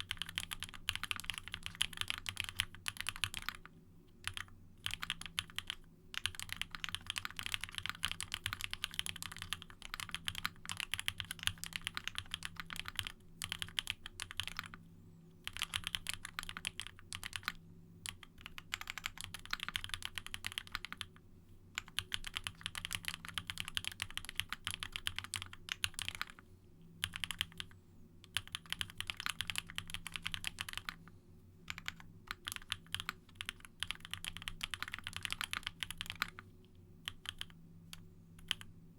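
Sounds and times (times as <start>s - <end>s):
mechanical keyboard typing: 0.0s - 14.8s, 15.4s - 21.1s, 21.8s - 26.4s, 27.0s - 31.0s, 31.7s - 36.4s, 37.0s - 38.7s.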